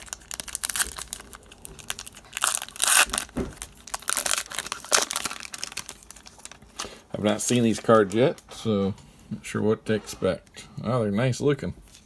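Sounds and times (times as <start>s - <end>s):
wrapper tearing and crinkling: 0.0s - 6.9s.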